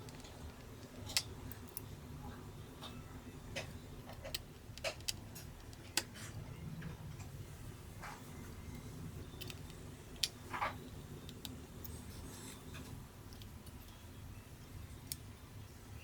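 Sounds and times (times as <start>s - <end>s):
screwdriver and small parts clicking: 0.0s - 1.9s, 3.6s - 6.3s, 9.3s - 14.0s.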